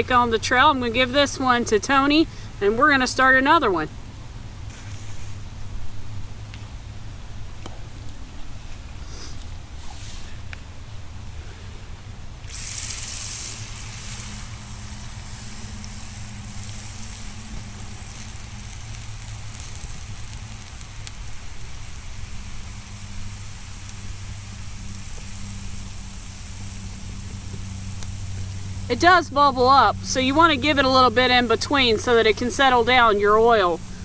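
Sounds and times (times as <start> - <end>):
low hum: 0.0 - 34.0
frying oil sizzling and bubbling: 12.5 - 34.0.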